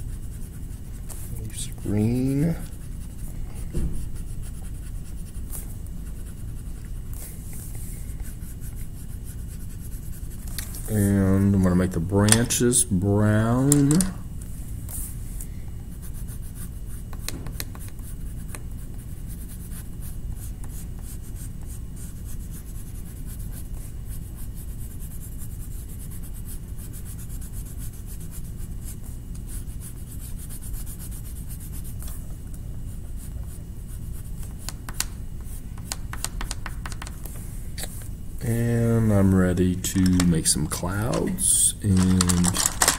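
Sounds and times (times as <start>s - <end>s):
colouring tool scratching on paper: 0.0s - 7.1s.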